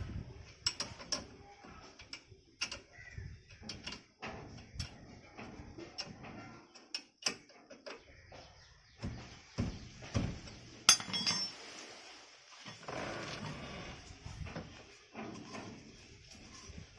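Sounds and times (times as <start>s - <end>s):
sharp metal clank: 10.9s - 11.6s
metal tools clinking: 10.9s - 11.7s.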